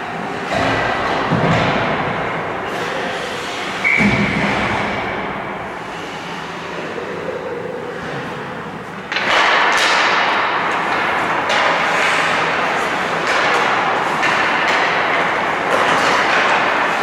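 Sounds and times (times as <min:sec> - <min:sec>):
knocks of sticks and puck: 0:00.4 - 0:05.3, 0:09.1 - 0:17.0
skates scraping ice: 0:09.1 - 0:17.0.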